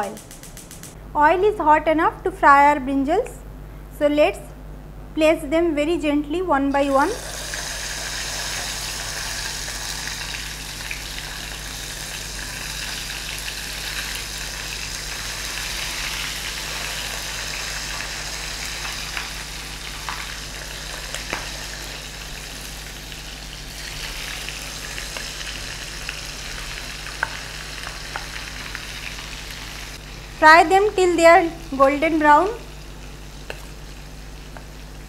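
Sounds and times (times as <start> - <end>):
food deep-frying in hot oil: 6.9 - 35.0
oil popping and crackling: 23.8 - 30.0.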